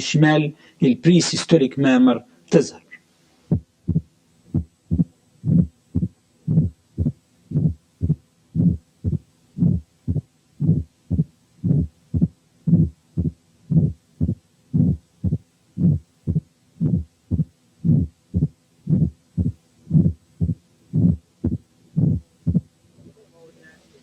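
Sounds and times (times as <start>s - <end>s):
heartbeat through stethoscope: 3.5s - 22.7s.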